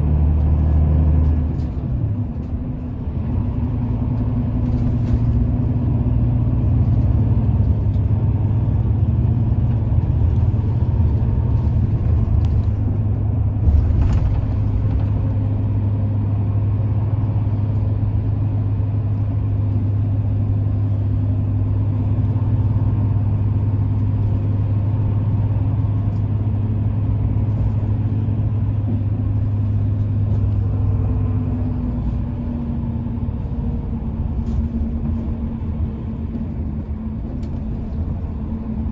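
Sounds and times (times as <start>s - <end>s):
low engine hum: 0.0s - 38.9s.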